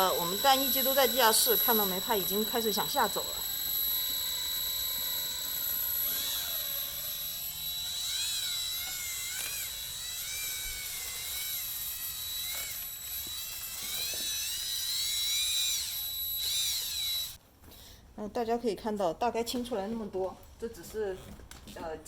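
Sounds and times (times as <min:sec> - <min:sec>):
drill motor whining: 0:00.0 - 0:17.4.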